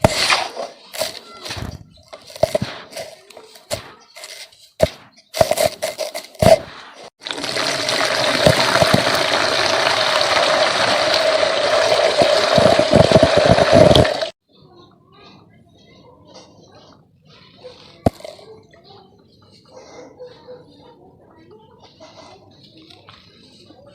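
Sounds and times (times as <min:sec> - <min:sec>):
dirt crunching: 0:00.0 - 0:07.6
water poured onto dirt: 0:07.2 - 0:14.4.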